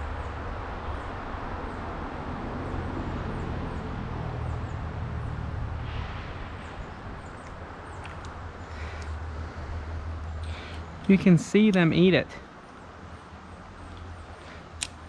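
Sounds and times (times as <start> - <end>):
low rumble: 3.8 - 10.5.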